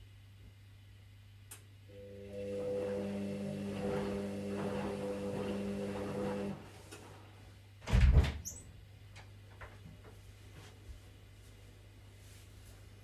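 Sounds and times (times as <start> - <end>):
washing machine motor humming: 1.9 - 7.5.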